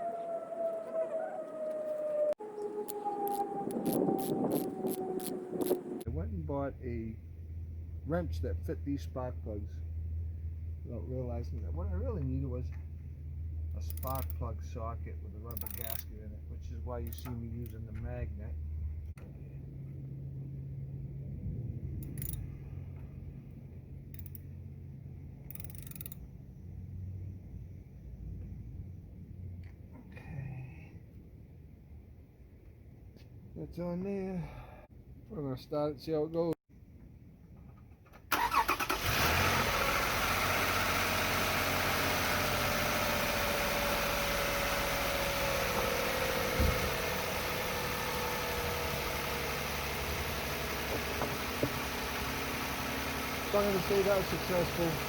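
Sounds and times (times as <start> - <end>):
car engine cranking and idling: 11.4 - 20.0, 38.1 - 55.0
hand tools clicking on metal: 13.8 - 14.4, 15.5 - 16.1, 17.1 - 17.8, 22.0 - 22.5, 24.2 - 24.4, 25.5 - 26.2
ratchet clicks: 13.8 - 14.4, 15.5 - 16.1, 17.1 - 17.4, 22.0 - 22.5, 24.2 - 24.5, 25.4 - 26.3.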